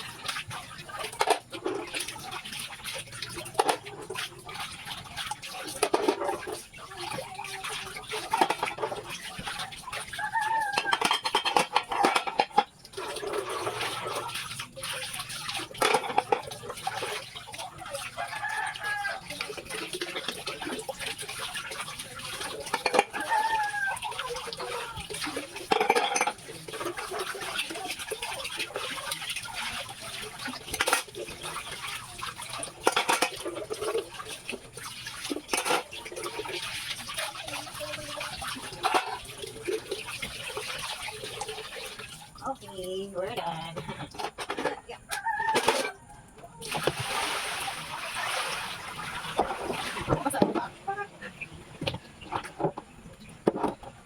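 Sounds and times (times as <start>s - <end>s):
water splashing: 0.0s - 54.0s
chickens clucking: 5.8s - 14.3s
rooster crowing: 10.2s - 11.0s, 18.2s - 19.3s, 23.1s - 24.1s, 45.1s - 46.4s
dishes clinking: 10.6s - 12.8s, 15.8s - 16.6s, 22.7s - 23.6s, 25.7s - 26.4s, 32.8s - 33.8s, 43.8s - 46.0s.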